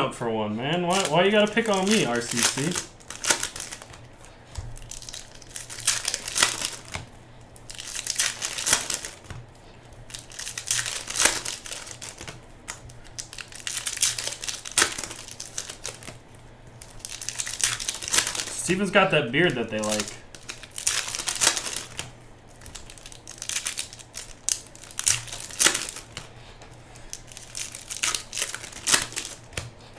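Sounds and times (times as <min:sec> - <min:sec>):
plastic wrapping crinkling and tearing: 0:00.6 - 0:29.9.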